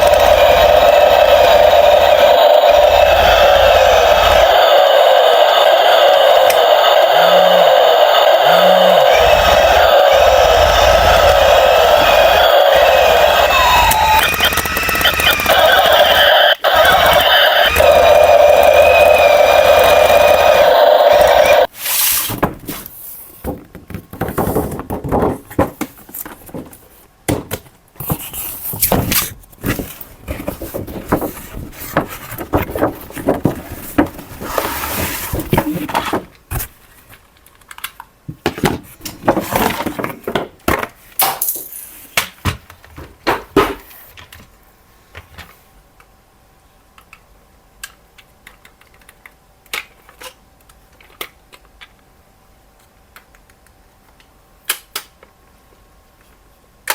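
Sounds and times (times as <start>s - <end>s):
scraping bursts: 0.0s - 21.7s.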